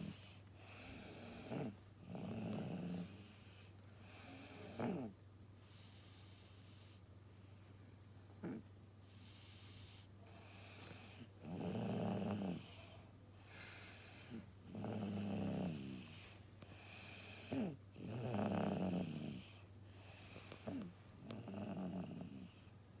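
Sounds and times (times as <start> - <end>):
child snoring: 0.0 - 3.4, 4.0 - 5.2, 9.2 - 22.6.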